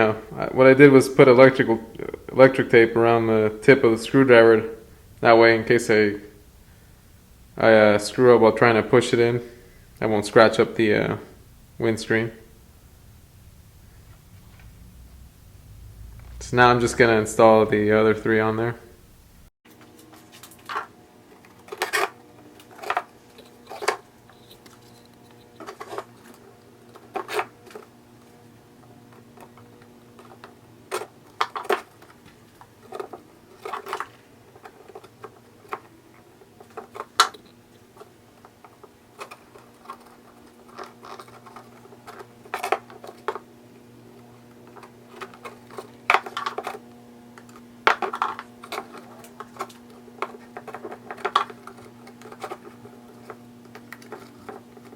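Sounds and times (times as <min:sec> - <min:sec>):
steady low hum: 0:00.0 - 0:19.5.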